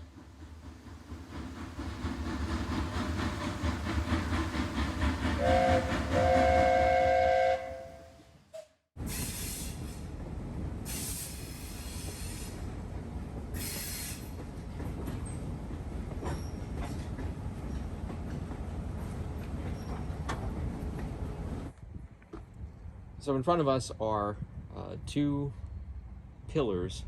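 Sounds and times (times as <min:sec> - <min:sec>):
train rumbling: 0:00.0 - 0:27.0
train horn: 0:05.4 - 0:08.3.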